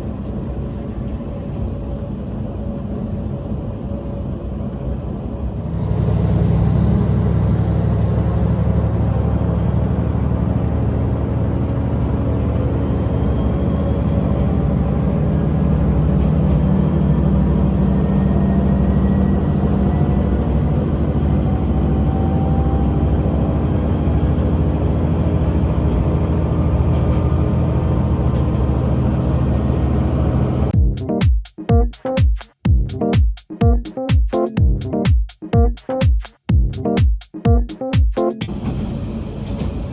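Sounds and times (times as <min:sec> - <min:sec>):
faint gliding whines: 0:00.0 - 0:30.7
diesel railcar engine rumble: 0:00.0 - 0:31.0, 0:38.5 - 0:39.9.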